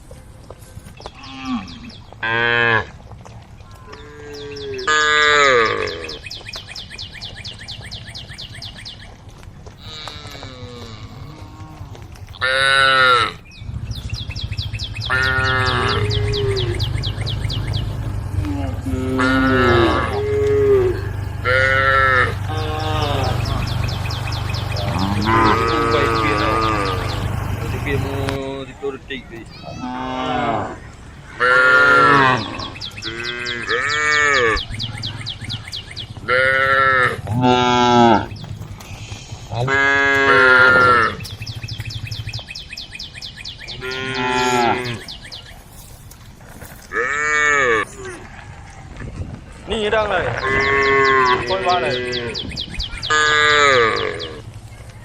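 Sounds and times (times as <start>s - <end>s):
cattle mooing: 3.7s - 6.2s, 9.8s - 13.4s, 15.1s - 28.4s, 29.6s - 30.8s, 31.4s - 34.6s, 36.2s - 38.3s, 39.5s - 41.3s, 43.8s - 45.1s, 46.9s - 48.2s, 50.0s - 52.5s, 53.1s - 54.4s.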